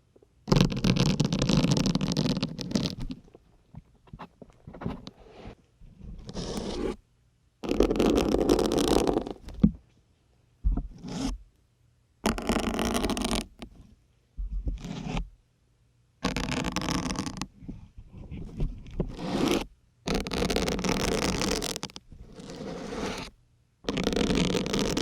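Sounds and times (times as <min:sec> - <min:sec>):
needles scraping into sponge: 0:00.5 - 0:03.2, 0:04.2 - 0:07.0, 0:07.6 - 0:09.4, 0:10.9 - 0:11.4, 0:14.8 - 0:15.3, 0:16.2 - 0:23.3, 0:23.9 - 0:25.0.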